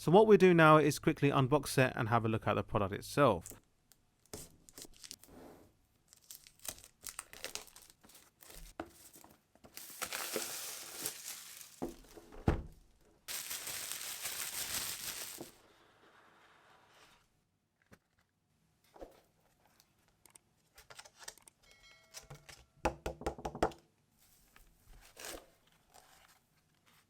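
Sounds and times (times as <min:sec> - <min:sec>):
packaging crinkling and rustling: 0:04.6 - 0:05.3, 0:06.1 - 0:12.3, 0:13.3 - 0:15.6
taps and knocks: 0:22.9 - 0:23.8.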